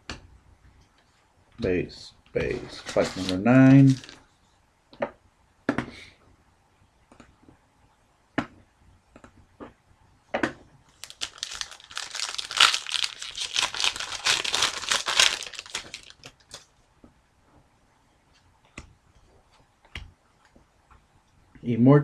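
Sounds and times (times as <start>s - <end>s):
card pack wrapper tearing and crinkling: 2.9s - 4.2s, 11.0s - 16.6s.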